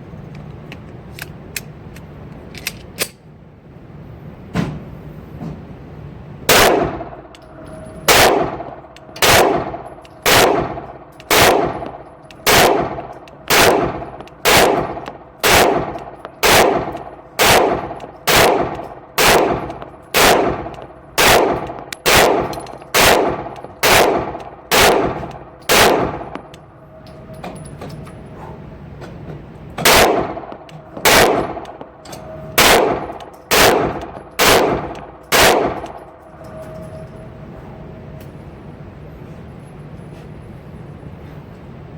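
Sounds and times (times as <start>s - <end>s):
pistol shots with echo: 6.5s - 7.3s, 8.1s - 26.5s, 29.8s - 36.1s.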